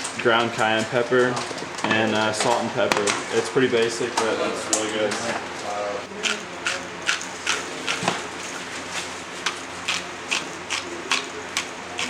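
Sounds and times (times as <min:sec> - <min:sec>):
hand rasping spice in bowl: 0:06.1 - 0:12.0.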